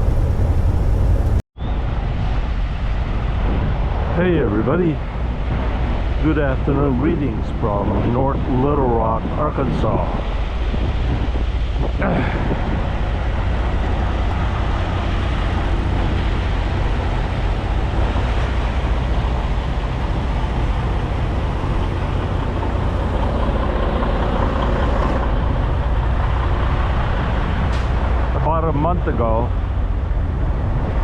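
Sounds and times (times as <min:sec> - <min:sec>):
truck engine drone: 0:00.0 - 0:01.4, 0:12.0 - 0:31.0
tyre and road noise: 0:00.0 - 0:01.4, 0:09.2 - 0:31.0.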